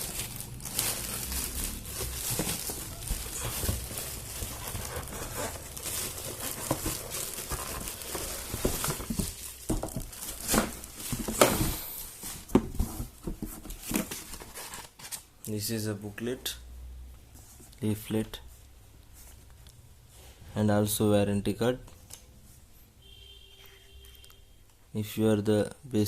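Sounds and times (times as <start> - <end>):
packaging rustling and crinkling: 0.0 - 15.3.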